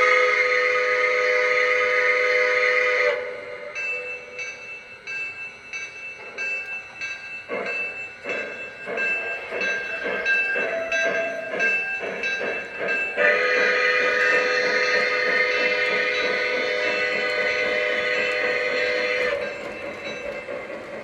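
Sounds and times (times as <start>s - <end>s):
model train steam chuff: 7.6s - 21.0s.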